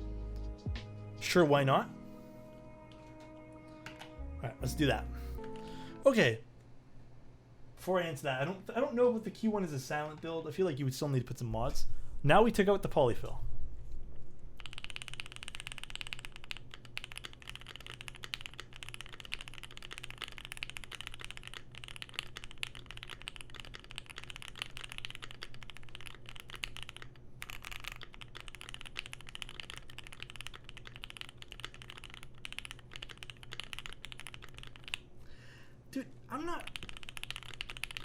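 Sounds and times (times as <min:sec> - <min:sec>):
fast typing on mechanical keyboard: 0:14.6 - 0:35.1, 0:36.4 - 0:38.0.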